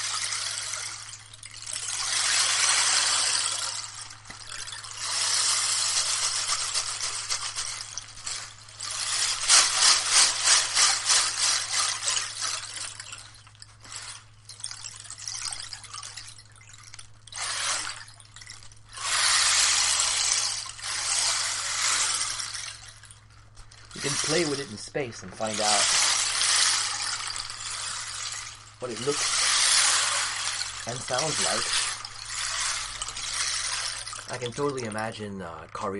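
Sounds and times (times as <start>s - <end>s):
rainstick shaking: 0.0s - 35.8s
rainstick pouring: 0.0s - 35.9s.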